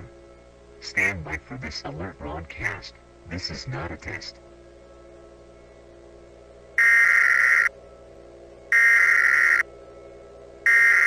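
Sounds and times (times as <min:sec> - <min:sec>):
faint steady drone: 0:00.0 - 0:11.0
buzzing digital bursts: 0:06.8 - 0:07.7, 0:08.7 - 0:09.6, 0:10.7 - 0:11.0.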